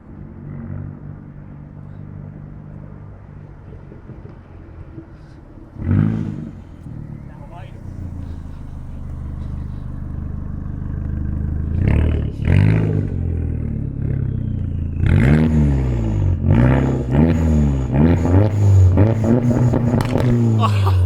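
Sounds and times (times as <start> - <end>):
car engine idling and revving: 0.0 - 21.0.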